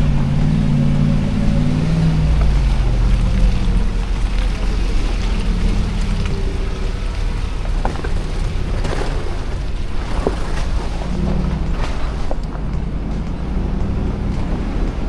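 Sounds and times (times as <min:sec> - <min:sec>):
engine running at low revs: 0:00.0 - 0:15.0
tyres crackling over ice: 0:00.0 - 0:15.0.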